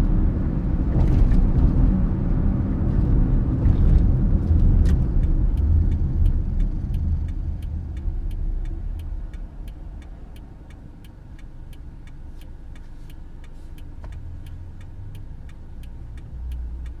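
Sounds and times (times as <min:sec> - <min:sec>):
car engine low hum: 0:00.0 - 0:17.0
light ticks: 0:03.9 - 0:17.0.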